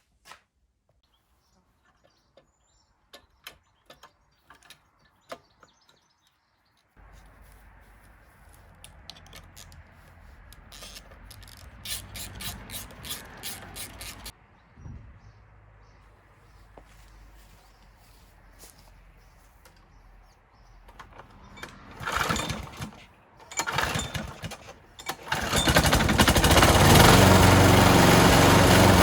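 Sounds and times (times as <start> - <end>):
tools and metal parts clicking: 3.1 - 7.4, 8.2 - 14.3, 20.9 - 25.9.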